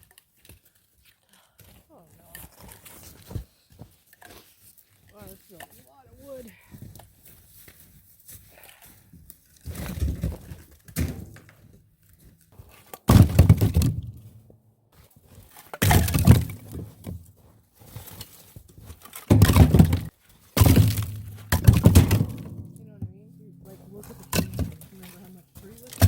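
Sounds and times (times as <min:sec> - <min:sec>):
firewood landing in a trailer: 0:09.6 - 0:11.7, 0:13.0 - 0:14.4, 0:15.7 - 0:17.3, 0:19.1 - 0:26.0.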